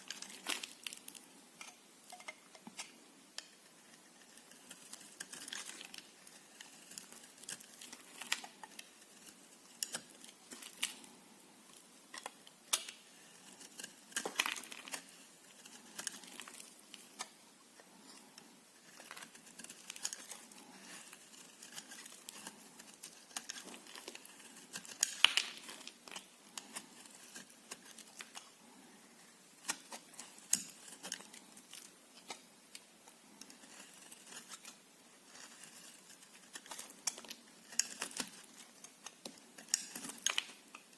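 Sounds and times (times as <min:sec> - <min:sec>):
knife cutting through soap: 0:12.1 - 0:17.3, 0:33.4 - 0:40.6.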